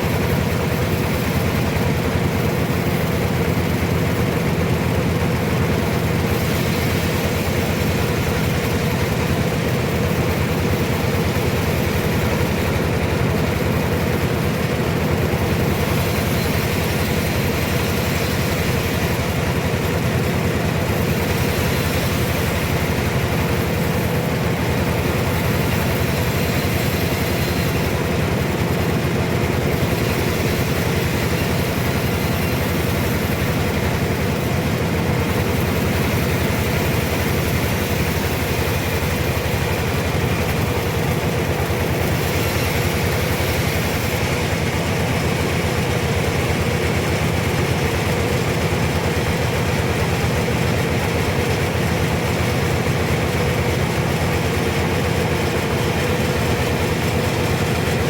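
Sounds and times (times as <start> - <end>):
sawmill machine drone: 0.0 - 58.0.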